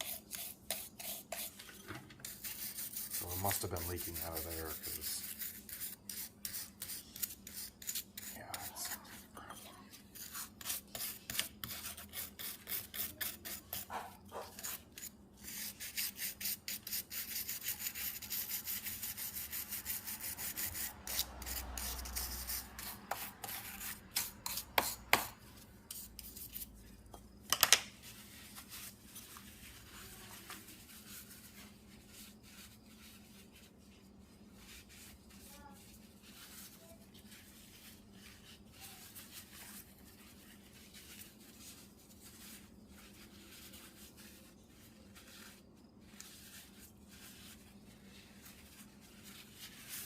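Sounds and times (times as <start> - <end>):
brush scrubbing metal part: 0.0 - 9.2, 10.0 - 26.7.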